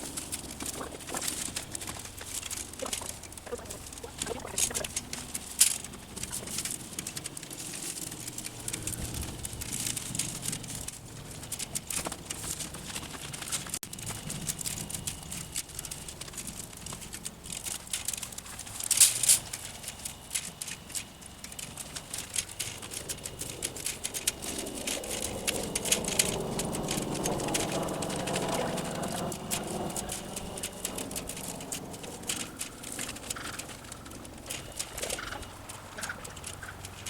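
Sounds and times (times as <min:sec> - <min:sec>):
dry vines rustling and crackling: 0:00.0 - 0:37.0.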